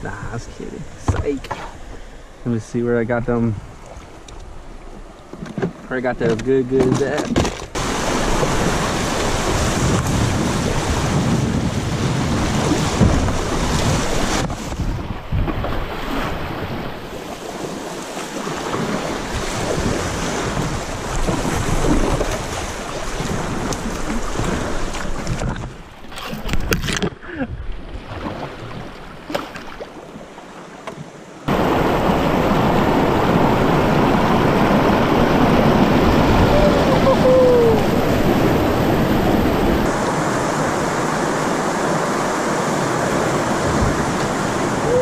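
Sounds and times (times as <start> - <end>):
river water rushing and splashing: 0.0 - 6.2, 7.0 - 27.0, 27.6 - 45.0
wind buffeting microphone: 7.7 - 25.8, 31.5 - 45.0.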